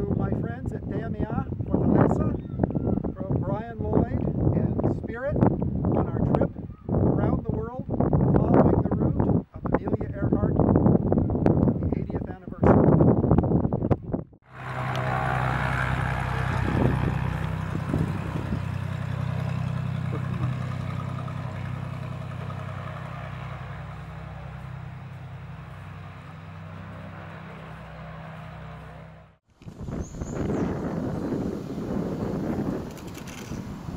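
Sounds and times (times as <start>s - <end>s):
propeller aircraft engine drone: 14.4s - 33.9s.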